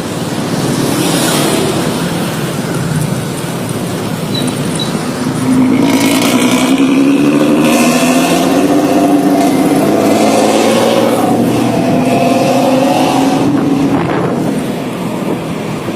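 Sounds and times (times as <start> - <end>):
engine through loud exhaust: 5.1 - 15.9.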